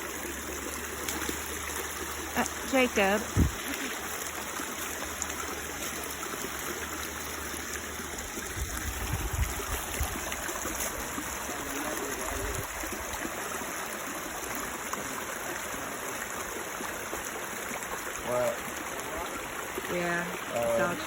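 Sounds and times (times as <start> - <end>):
stream water rushing: 0.0 - 21.0
low bumps: 3.2 - 3.7.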